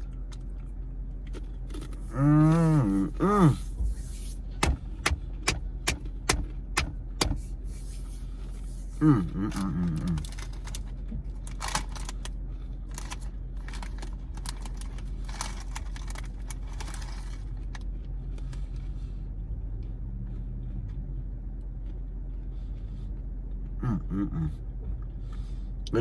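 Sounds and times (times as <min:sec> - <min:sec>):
steady low hum: 0:00.0 - 0:26.0
crunching rice crisp being chewed: 0:08.6 - 0:18.6.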